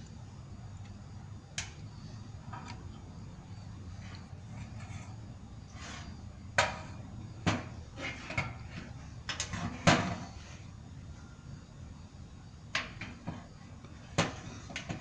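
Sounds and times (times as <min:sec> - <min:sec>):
knocks and clatters of tools: 0:06.6 - 0:10.4, 0:14.1 - 0:15.0.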